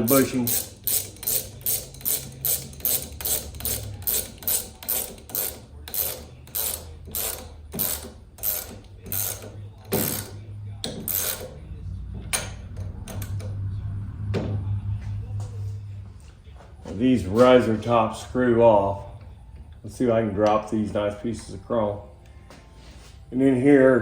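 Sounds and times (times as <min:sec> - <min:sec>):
socket ratchet clicking: 0:00.0 - 0:11.5.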